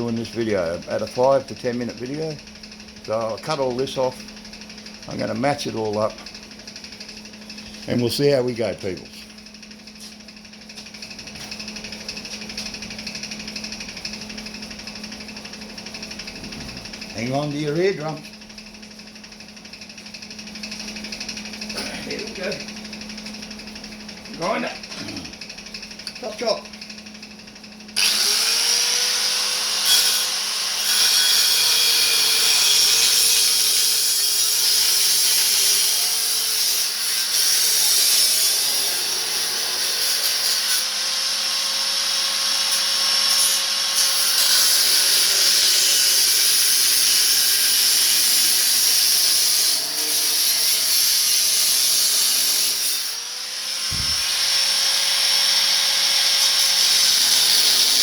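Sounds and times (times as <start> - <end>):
angle grinder cutting metal pipe: 0.0 - 2.4, 3.1 - 4.2, 5.1 - 6.2, 28.0 - 58.0.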